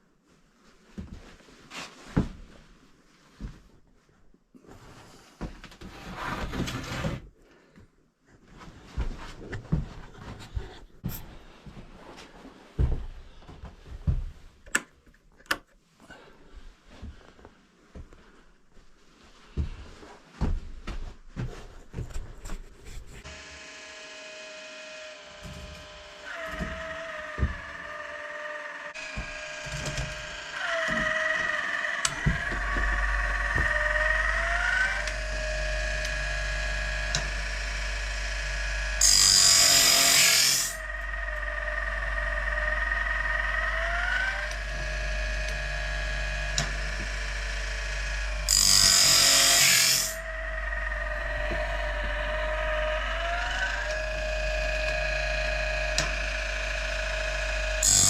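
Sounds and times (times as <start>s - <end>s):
machine humming: 23.2s - 58.0s.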